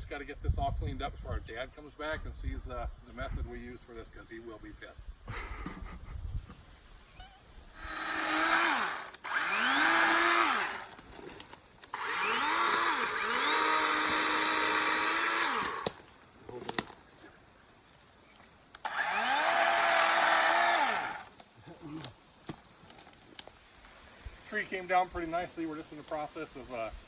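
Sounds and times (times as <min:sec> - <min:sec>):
battery chainsaw motor whine: 0:07.8 - 0:16.0, 0:18.8 - 0:21.3.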